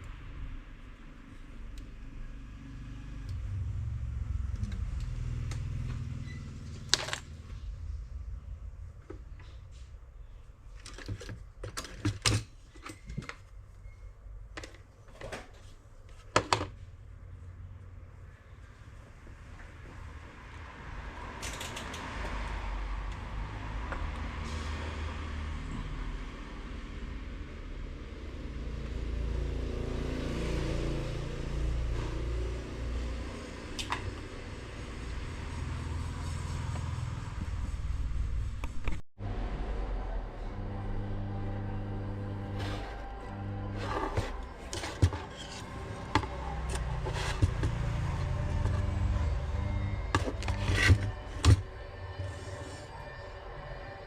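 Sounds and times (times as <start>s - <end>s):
motor vehicle rumble: 0.0s - 11.6s, 16.8s - 54.0s
low steady hum: 0.0s - 21.0s, 32.2s - 54.0s
hard objects clicking and knocking: 43.8s - 48.9s.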